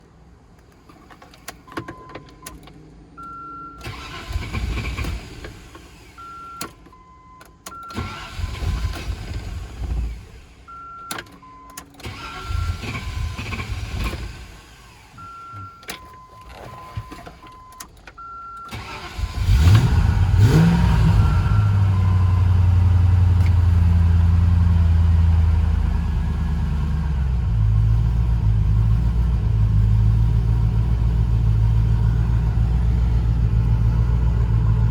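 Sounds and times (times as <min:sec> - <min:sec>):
engine cranking: 0:03.8 - 0:05.8, 0:07.7 - 0:10.2, 0:11.9 - 0:14.6, 0:18.6 - 0:22.1
engine revving and idling: 0:18.7 - 0:34.9.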